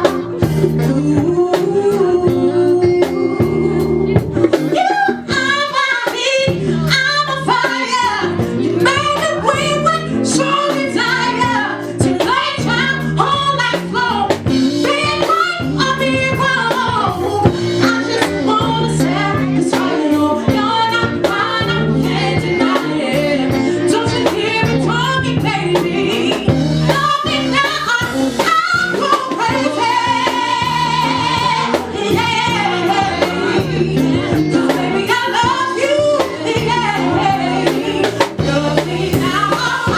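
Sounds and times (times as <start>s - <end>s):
bass guitar: 0.0s - 39.9s
drum kit: 0.0s - 39.9s
keyboards: 0.0s - 39.9s
person singing lead vocal: 0.0s - 39.9s.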